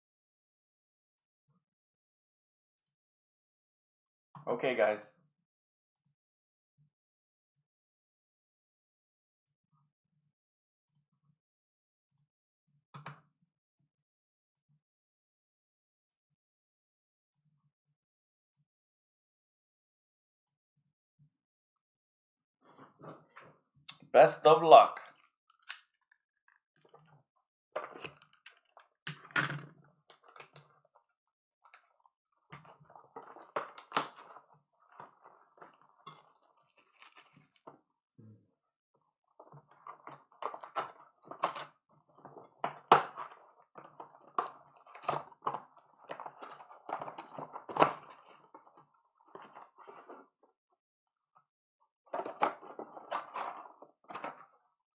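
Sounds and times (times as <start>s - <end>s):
plastic wrapping crinkling and tearing: 32.6s - 37.8s.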